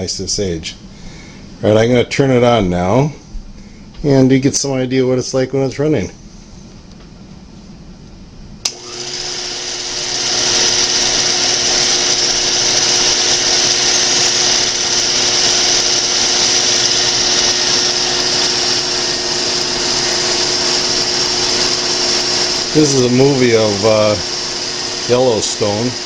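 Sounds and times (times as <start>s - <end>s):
projector motor whirring: 8.6s - 26.0s.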